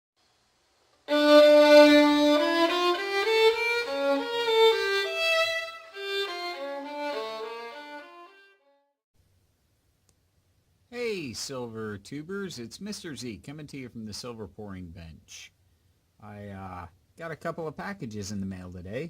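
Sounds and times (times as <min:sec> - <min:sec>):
solo violin melody: 0:01.1 - 0:08.8.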